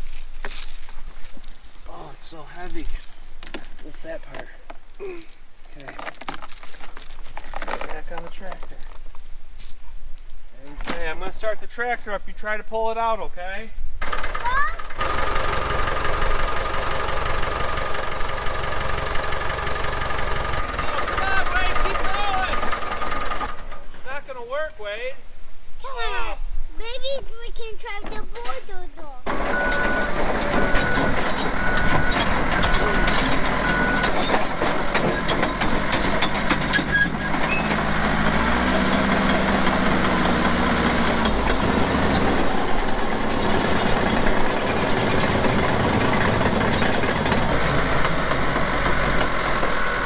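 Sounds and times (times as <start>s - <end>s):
tractor engine running: 14.0s - 24.1s, 29.3s - 50.0s
backup alarm beeping: 29.3s - 34.3s.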